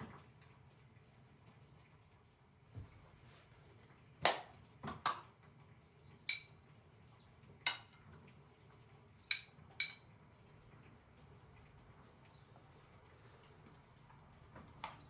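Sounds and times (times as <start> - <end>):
dishes and cutlery clinking: 6.3 - 6.6, 9.3 - 10.1.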